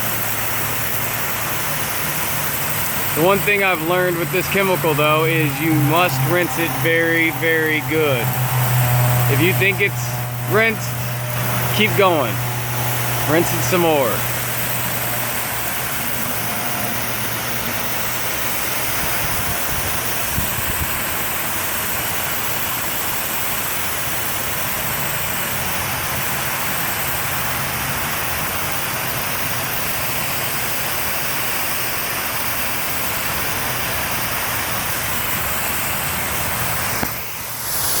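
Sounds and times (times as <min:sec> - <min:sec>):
pressure washer motor hum: 0:00.0 - 0:38.0
water spray hissing: 0:35.0 - 0:38.0.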